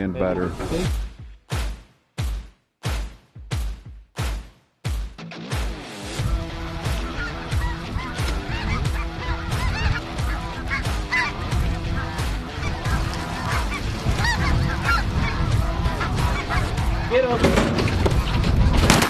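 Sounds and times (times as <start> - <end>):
geese honking: 6.2 - 18.7.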